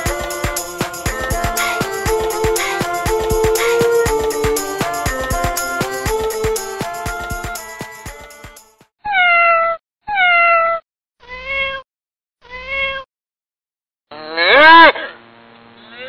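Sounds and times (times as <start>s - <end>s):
music: 0.0s - 8.9s
cat meowing: 9.1s - 11.8s, 12.4s - 13.1s
loud animal call: 14.1s - 15.0s.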